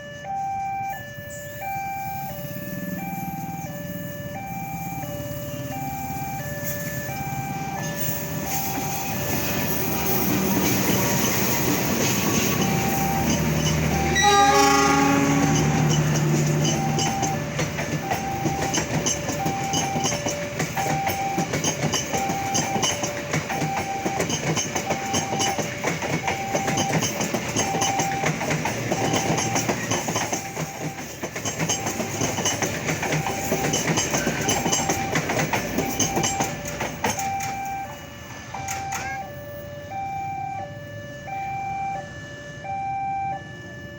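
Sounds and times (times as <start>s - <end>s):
two-tone crossing alarm: 0.0s - 43.9s
train wheels clacking: 2.2s - 39.2s
train horn blast: 14.0s - 16.2s.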